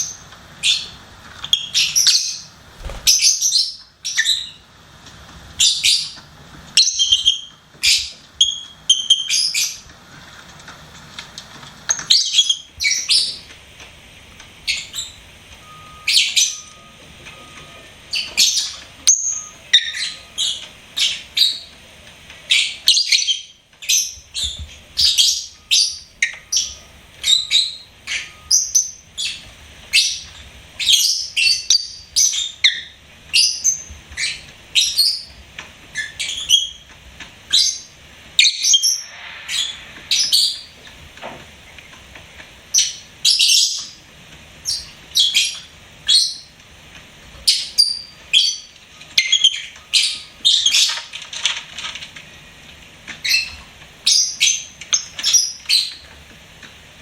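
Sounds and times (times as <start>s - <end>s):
birds chirping: 1.6s - 4.6s, 22.5s - 35.4s, 37.5s - 41.0s.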